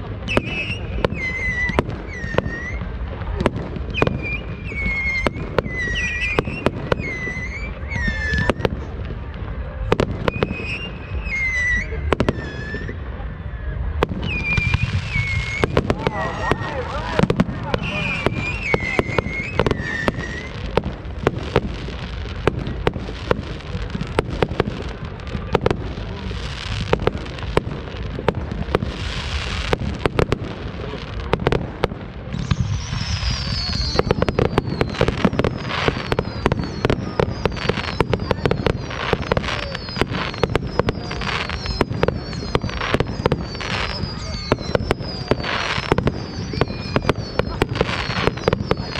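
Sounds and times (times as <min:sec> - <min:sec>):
fireworks bangs and crackles: 0:00.0 - 0:48.9
falling whistles of shells: 0:00.3 - 0:02.9, 0:03.9 - 0:08.7, 0:10.2 - 0:13.0, 0:14.2 - 0:20.8, 0:32.3 - 0:48.9.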